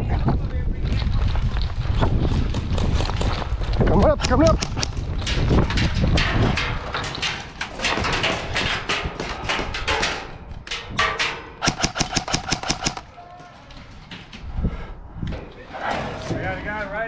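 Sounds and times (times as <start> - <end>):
running footsteps: 0.2 - 10.6
rapid gunfire cracks: 11.6 - 13.0.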